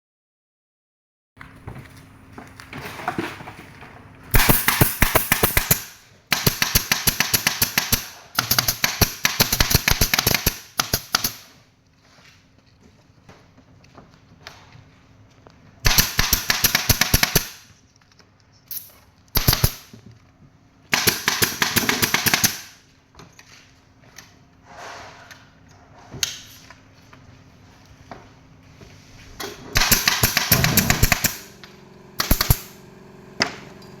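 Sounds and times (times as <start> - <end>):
power tool firing rapid strikes: 4.3 - 11.5, 15.8 - 17.6, 19.4 - 19.9, 20.9 - 22.8, 29.8 - 33.6.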